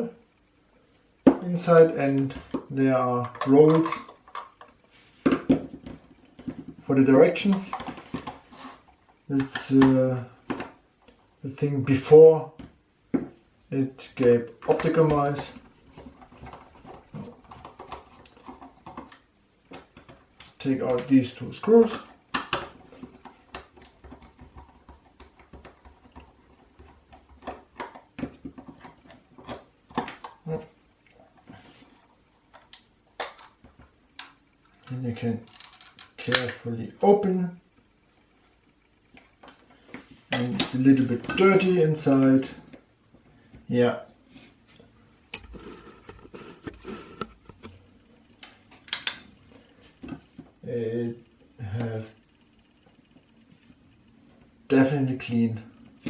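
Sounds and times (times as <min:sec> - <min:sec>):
plastic parts clicking and tapping: 0:14.5 - 0:30.6, 0:32.5 - 0:36.6.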